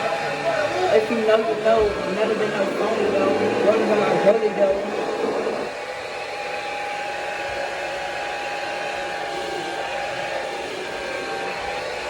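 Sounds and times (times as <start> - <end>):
hair dryer running: 0.0 - 12.0.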